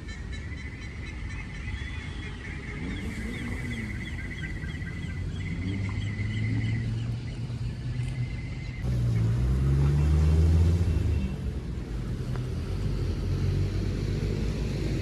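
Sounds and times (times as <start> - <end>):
bird chirps: 2.8 - 10.1.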